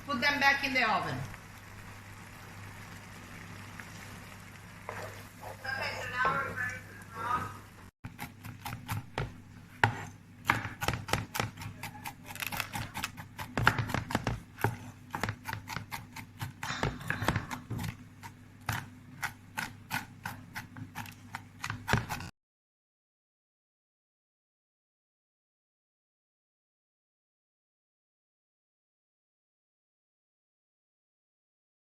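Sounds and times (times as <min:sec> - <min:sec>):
knife chopping on cutting board: 0:08.1 - 0:22.3.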